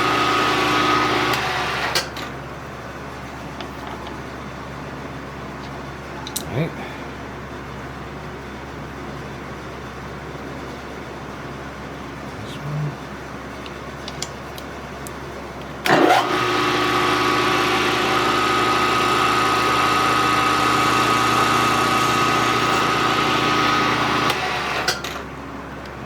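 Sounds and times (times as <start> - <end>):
milling machine spindle whine: 0.0 - 2.1, 15.9 - 25.0.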